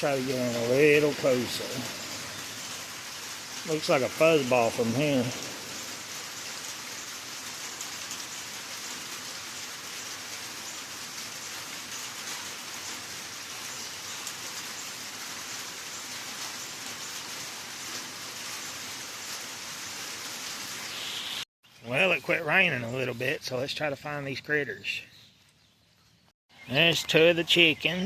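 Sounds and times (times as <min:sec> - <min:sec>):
steady rain falling: 0:00.0 - 0:21.4.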